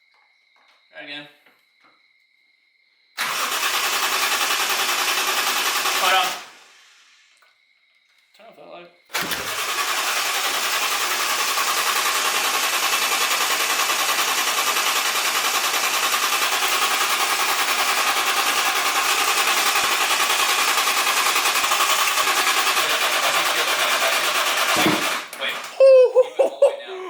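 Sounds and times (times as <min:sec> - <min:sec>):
engine cranking on starter motor: 0:03.2 - 0:07.4, 0:09.1 - 0:25.8.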